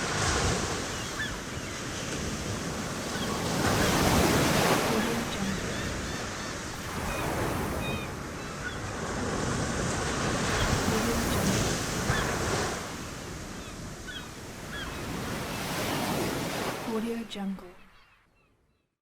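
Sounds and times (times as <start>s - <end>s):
surf washing onto beach: 0.0s - 17.1s
faint seagull calls: 0.8s - 2.0s, 3.0s - 8.9s, 10.5s - 12.4s, 13.6s - 16.1s.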